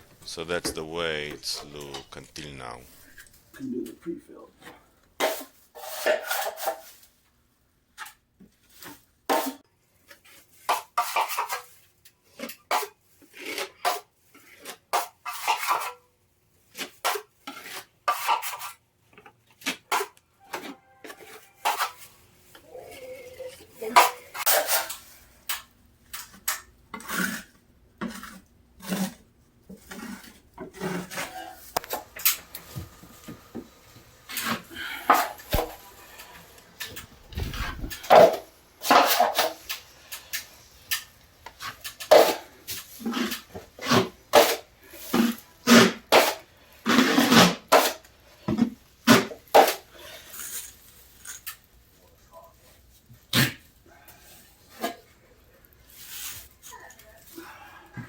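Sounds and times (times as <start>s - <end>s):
drywall knife scraping compound: 4.6s - 7.1s, 8.8s - 18.8s, 26.1s - 32.0s, 34.3s - 51.7s.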